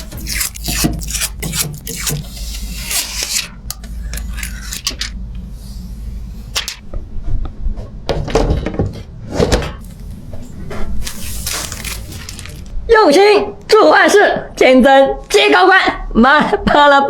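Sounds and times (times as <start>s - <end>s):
rubbing and scraping hardware: 0.0s - 6.8s, 9.2s - 12.7s
steady low hum: 0.0s - 16.9s.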